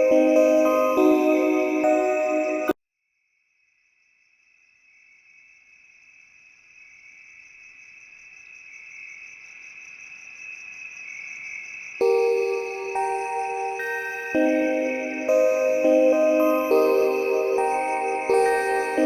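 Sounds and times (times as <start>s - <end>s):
music: 0.0s - 2.8s, 12.0s - 19.0s
crickets chirping: 3.7s - 19.0s.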